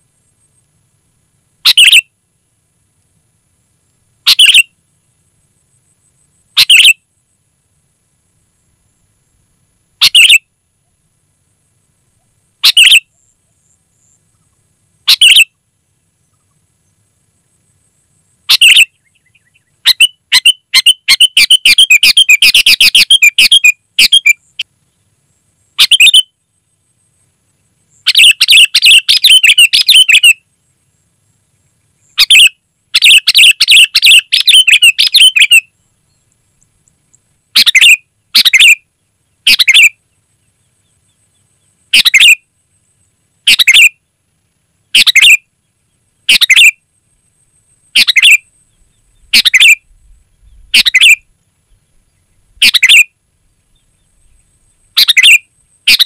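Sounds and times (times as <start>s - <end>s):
bird chattering: 1.7s - 2.0s, 4.3s - 4.6s, 6.6s - 7.0s, 10.0s - 10.4s, 12.6s - 13.0s, 15.1s - 15.5s, 18.5s - 24.6s, 25.8s - 26.2s, 28.1s - 30.4s, 32.2s - 35.6s, 37.6s - 38.8s, 39.4s - 39.9s, 41.9s - 42.4s, 43.5s - 43.9s, 44.9s - 45.4s, 48.0s - 48.4s, 49.2s - 49.8s, 50.4s - 51.2s, 52.6s - 53.1s, 55.0s - 56.0s
bulbul singing: 32.1s - 35.7s.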